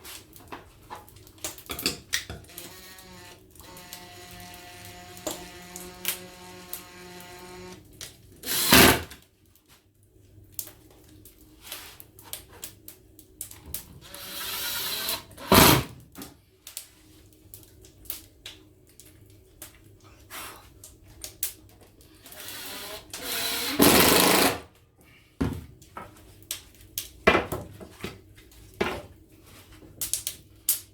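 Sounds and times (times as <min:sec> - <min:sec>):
power tool motor running: 0:02.5 - 0:07.8, 0:08.5 - 0:09.0, 0:14.0 - 0:15.6, 0:22.3 - 0:24.6.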